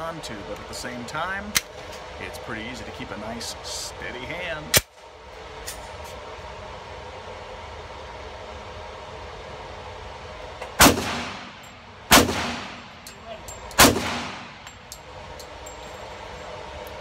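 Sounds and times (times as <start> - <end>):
pistol shots: 10.8 - 13.0, 13.8 - 14.7.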